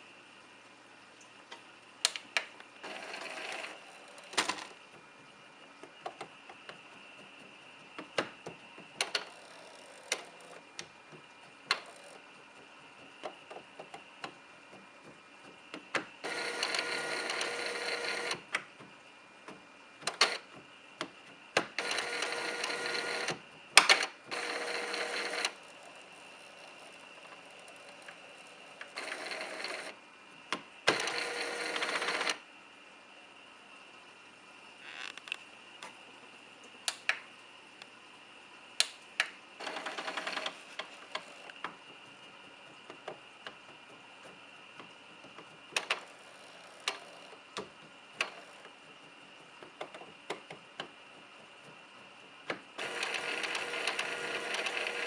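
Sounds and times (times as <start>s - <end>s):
printer motor running: 2.8s - 5.3s, 6.6s - 18.6s, 20.0s - 20.6s, 21.6s - 30.0s, 30.8s - 32.4s, 39.6s - 50.4s, 51.1s - 55.0s.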